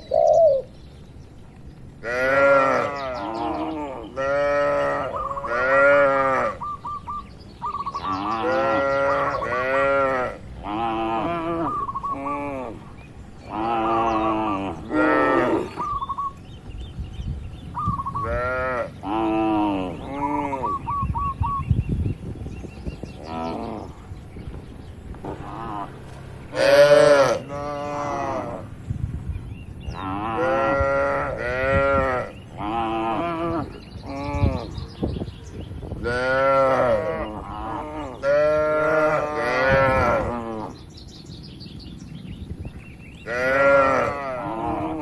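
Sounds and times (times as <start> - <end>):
cattle mooing: 2.0 - 6.6, 13.5 - 15.8, 25.3 - 28.7, 36.1 - 40.8, 43.3 - 45.0.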